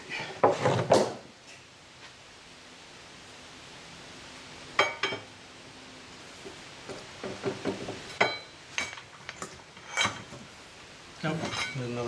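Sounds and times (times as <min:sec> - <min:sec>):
hand tools clinking on metal: 0:11.2 - 0:12.0.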